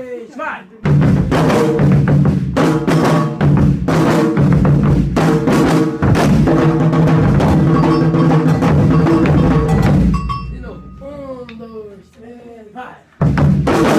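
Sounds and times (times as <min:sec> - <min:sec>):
loud drum hits: 0:00.9 - 0:10.7, 0:13.2 - 0:13.9
held instrumental notes: 0:05.6 - 0:12.5
steady bass line: 0:06.0 - 0:11.4.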